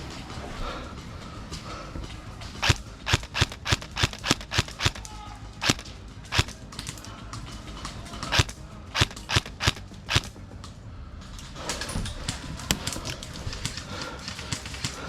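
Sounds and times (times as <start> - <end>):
airsoft gun shots: 2.6 - 6.6, 8.3 - 10.3.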